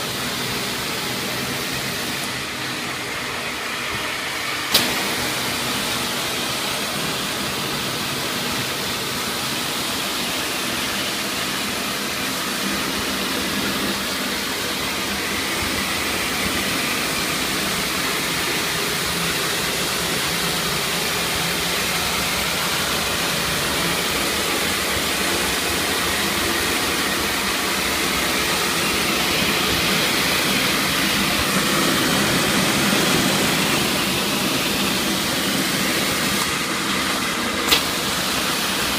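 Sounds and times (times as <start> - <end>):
cleaning machine spray and suction: 0.0 - 38.9.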